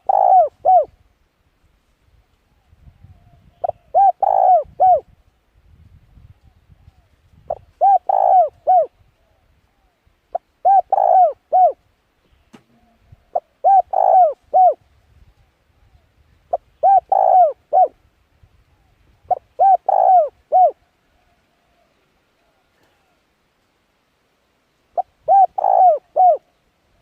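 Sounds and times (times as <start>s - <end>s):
bird hooting: 0.0s - 1.0s, 3.1s - 5.0s, 7.5s - 9.0s, 9.8s - 11.8s, 12.7s - 14.8s, 16.5s - 18.0s, 19.3s - 23.2s, 24.9s - 26.6s.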